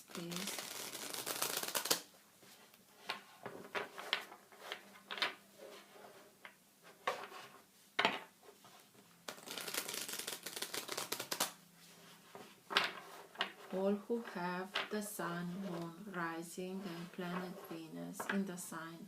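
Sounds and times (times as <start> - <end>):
cards being shuffled by hand: 0.0 - 2.1, 9.2 - 16.1.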